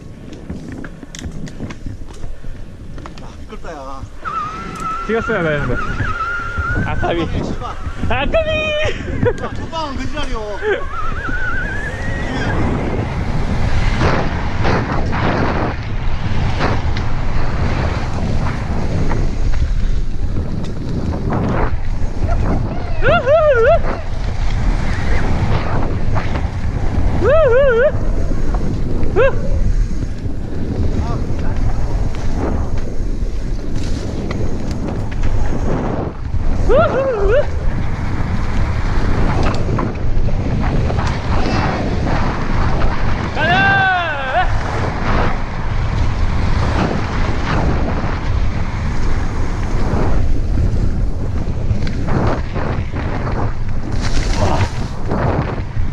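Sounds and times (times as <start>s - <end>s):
mountain bike rumbling on dirt trail: 0.0s - 55.9s
wind rushing over microphone: 0.0s - 55.9s
wavering whistle-like squeals: 4.2s - 8.1s, 10.8s - 12.7s.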